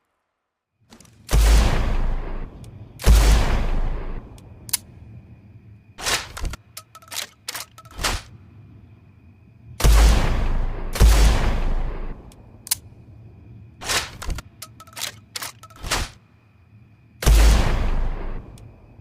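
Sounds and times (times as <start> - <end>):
shotgun blast: 1.3 - 4.2, 9.8 - 12.2, 17.2 - 18.5
metallic clicks of gun reloading: 6.0 - 8.3, 13.8 - 16.2.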